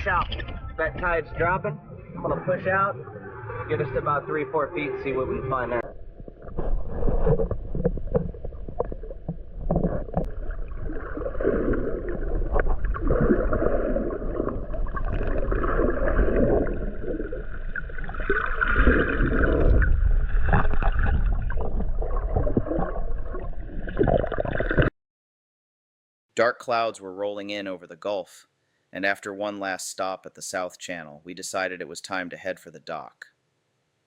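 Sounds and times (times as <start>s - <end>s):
water splashing along hull: 5.9s - 24.9s.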